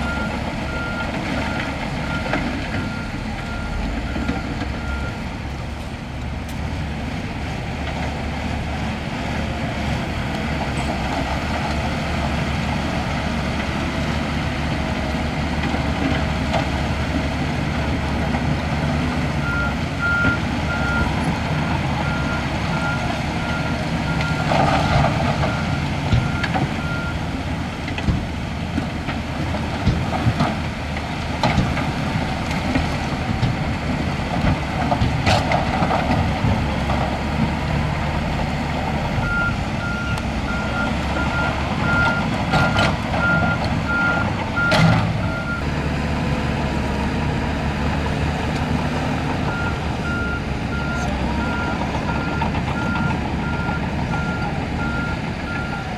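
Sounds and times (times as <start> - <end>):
diesel engine running: 0.0 - 55.9
reversing alarm beeping: 49.5 - 55.9.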